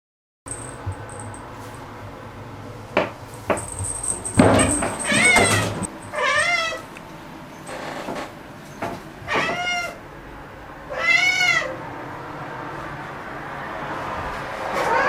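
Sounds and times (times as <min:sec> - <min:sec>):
cat meowing: 0:09.3 - 0:10.0, 0:10.9 - 0:11.8.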